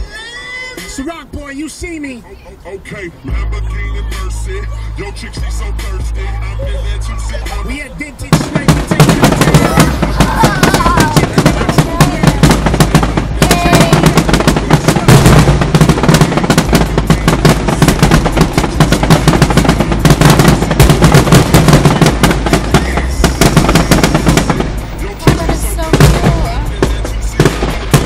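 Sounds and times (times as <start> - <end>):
fireworks bangs and crackles: 7.0 - 28.0.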